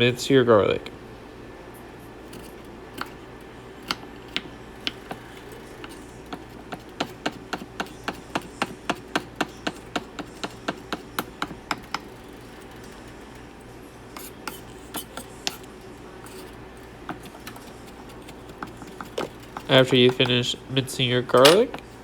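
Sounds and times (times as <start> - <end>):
knife chopping on cutting board: 2.3 - 3.2, 3.8 - 12.4, 14.1 - 20.6, 21.3 - 22.0.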